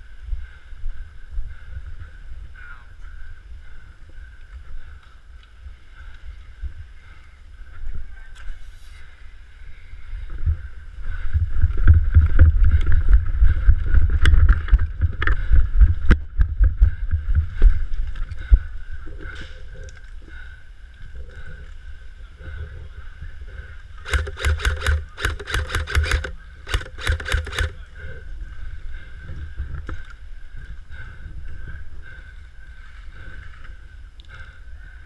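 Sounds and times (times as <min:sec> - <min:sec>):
low rumble of wind on microphone: 0:00.0 - 0:35.0
sharp clicks: 0:24.0 - 0:27.8.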